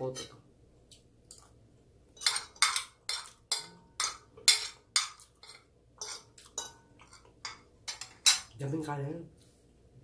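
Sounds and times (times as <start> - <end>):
metal spoon scraping a plate: 2.2 - 8.5.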